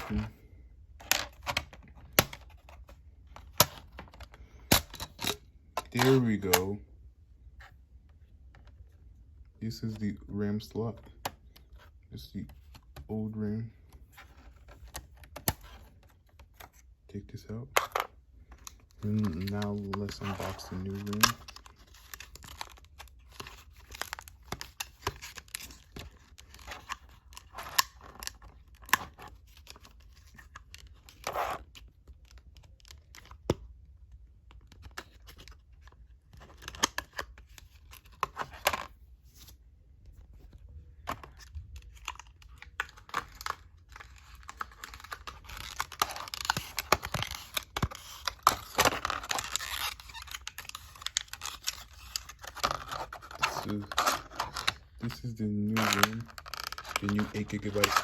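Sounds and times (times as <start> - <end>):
packaging clicks and crinkles: 41.0 - 58.0
packaging tearing and rustling: 41.2 - 58.0.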